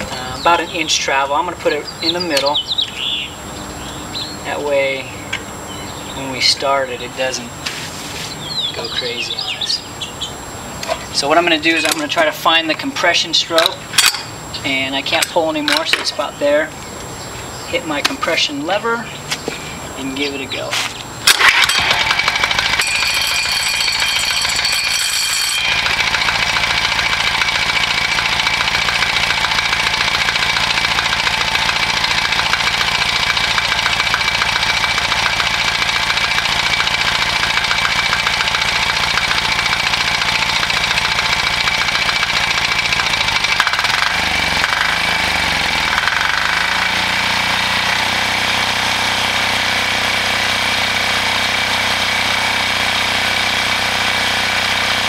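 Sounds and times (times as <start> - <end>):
diesel engine knocking: 21.8 - 47.2.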